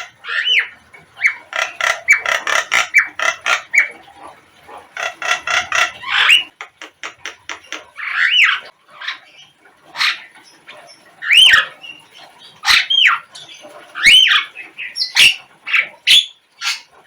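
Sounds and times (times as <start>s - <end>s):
bird chattering and whistling: 0.0s - 3.9s, 5.0s - 8.6s.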